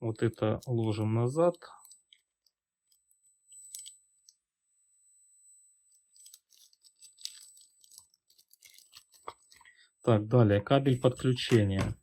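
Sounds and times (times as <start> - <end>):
packaging rustling: 6.1 - 9.8.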